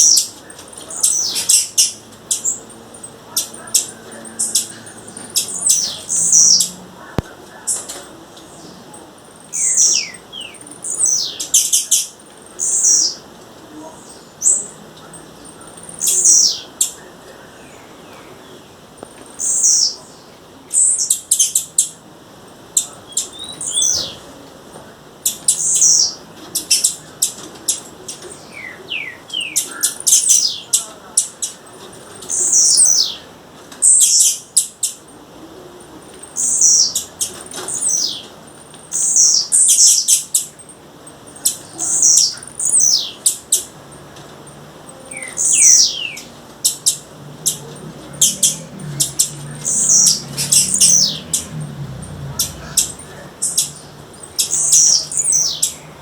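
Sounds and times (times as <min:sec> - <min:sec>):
bird calling with falling notes: 0:45.0 - 0:56.0.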